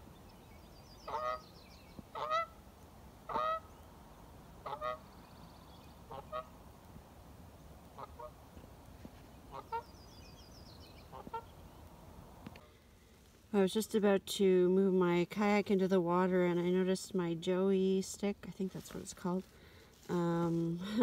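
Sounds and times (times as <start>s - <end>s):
goose honking: 1.1s - 1.4s, 2.1s - 2.6s, 3.3s - 3.7s, 4.6s - 5.0s, 6.1s - 6.5s, 8.0s - 8.4s, 9.5s - 9.9s, 11.1s - 11.5s.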